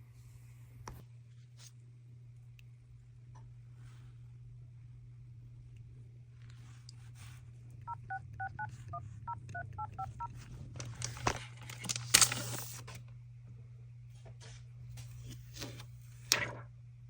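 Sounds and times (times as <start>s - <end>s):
phone dial tone beeps: 7.9s - 10.3s.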